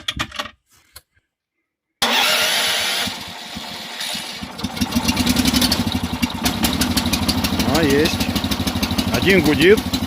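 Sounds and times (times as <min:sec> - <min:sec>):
engine starting and running: 0:02.0 - 0:10.0.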